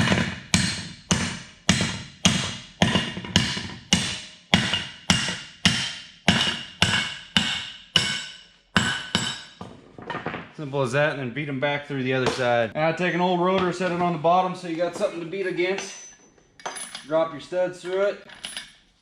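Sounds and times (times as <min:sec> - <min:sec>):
sledgehammer striking metal: 0:00.0 - 0:09.7.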